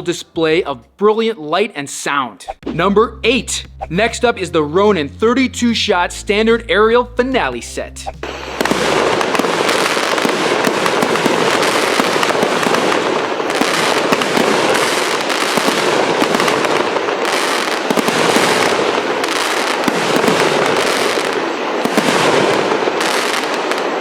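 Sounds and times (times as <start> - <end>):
firework pops and crackles: 8.7 - 24.0.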